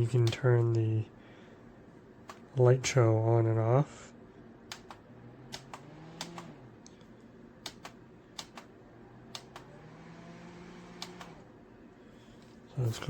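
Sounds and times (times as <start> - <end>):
faint low hum: 0.0 - 13.0
plastic buttons clicking: 4.7 - 6.6, 7.6 - 8.7.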